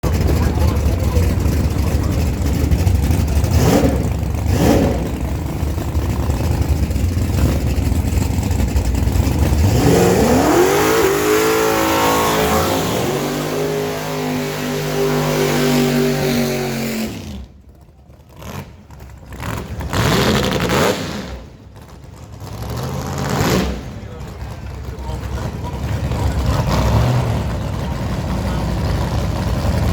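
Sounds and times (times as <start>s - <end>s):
racing engine accelerating: 0.0s - 17.5s
pickup engines revving: 0.0s - 29.9s.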